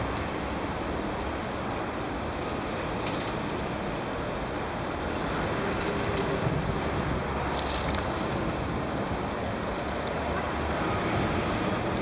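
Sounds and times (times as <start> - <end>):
kingfisher high-pitched calls: 6.0 - 7.3.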